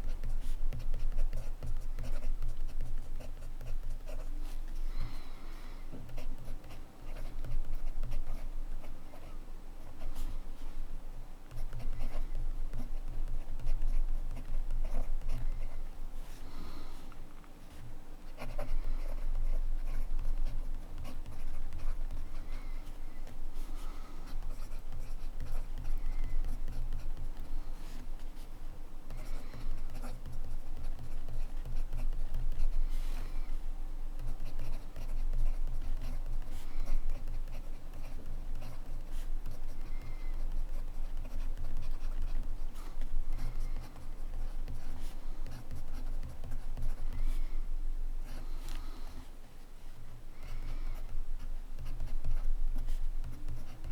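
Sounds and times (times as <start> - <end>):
pen nib scratching paper: 0.1 - 4.3, 11.5 - 15.8, 24.2 - 27.6, 29.1 - 32.9, 34.2 - 47.4, 51.8 - 53.9.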